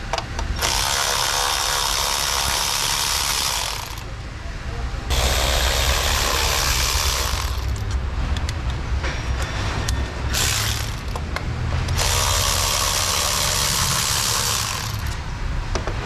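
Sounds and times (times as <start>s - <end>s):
ratchet wrench ratcheting: 0.6s - 4.1s, 5.1s - 8.0s, 10.3s - 15.2s.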